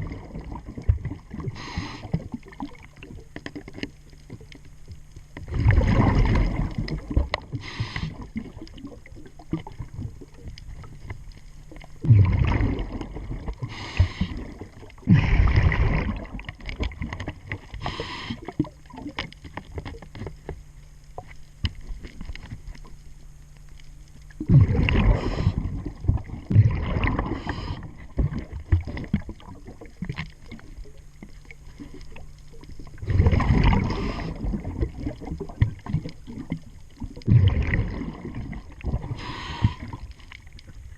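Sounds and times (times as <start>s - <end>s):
bubbling exhalations underwater: 0.0s - 3.7s, 5.4s - 10.6s, 11.8s - 19.3s, 24.4s - 31.0s, 31.8s - 40.3s
regulator hissing inhalations: 1.6s - 2.1s, 7.6s - 8.2s, 13.7s - 14.4s, 17.8s - 18.5s, 39.2s - 40.0s.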